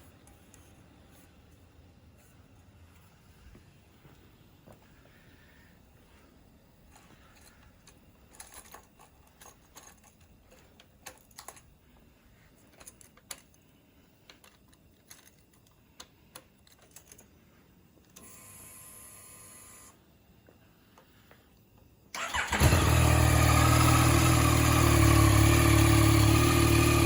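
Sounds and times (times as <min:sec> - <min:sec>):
light clicks and rattles: 0:06.9 - 0:11.8, 0:12.5 - 0:17.4
fuel pump electric whir: 0:22.1 - 0:27.0.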